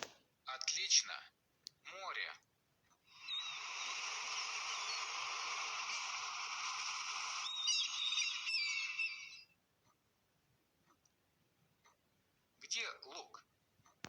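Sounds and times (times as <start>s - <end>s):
gulls calling: 6.7s - 9.6s.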